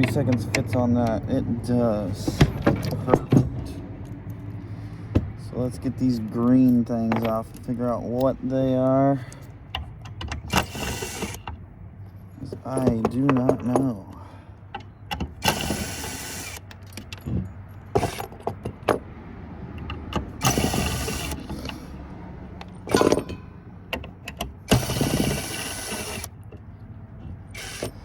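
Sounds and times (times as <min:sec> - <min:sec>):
metal parts and tools clinking: 0:05.6 - 0:19.1, 0:22.6 - 0:28.0
power driver spinning: 0:09.8 - 0:11.6, 0:15.2 - 0:16.8, 0:19.8 - 0:22.0, 0:22.6 - 0:26.5, 0:27.3 - 0:28.0.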